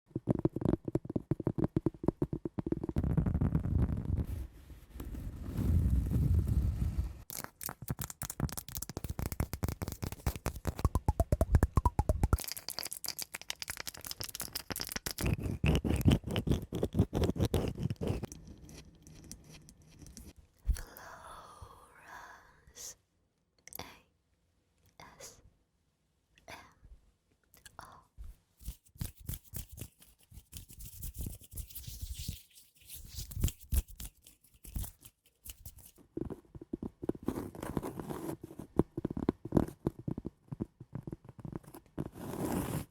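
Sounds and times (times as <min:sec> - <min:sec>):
scratching and tapping on cork and wood: 0:00.1 - 0:03.2, 0:07.3 - 0:20.4, 0:28.6 - 0:42.8.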